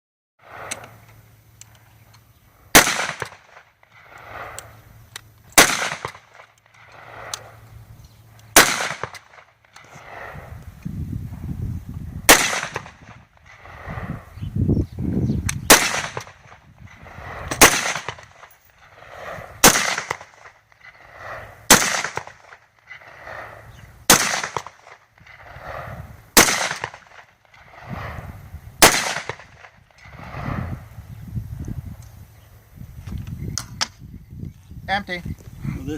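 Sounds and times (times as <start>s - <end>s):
rifle shots with echo: 2.7s - 4.6s, 5.5s - 7.6s, 8.5s - 10.4s, 12.3s - 14.1s, 15.6s - 28.2s, 28.8s - 30.5s.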